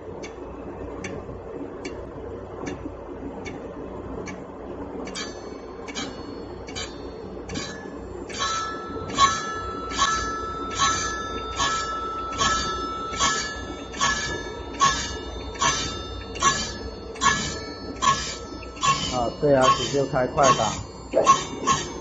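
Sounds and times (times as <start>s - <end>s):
low motor hum: 0.0s - 22.0s
indexing mechanism clicking: 5.0s - 22.0s
steel saw blade ringing: 5.1s - 22.0s
saw blade sharpening grinder: 9.2s - 22.0s.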